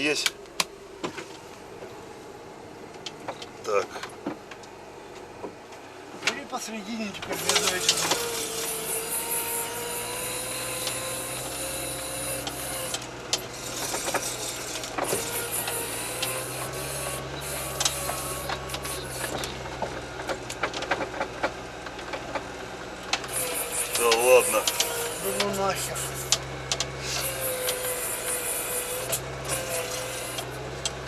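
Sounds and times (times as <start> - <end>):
vehicle engine humming: 0.0 - 31.0
knocks and clatters: 17.8 - 23.4.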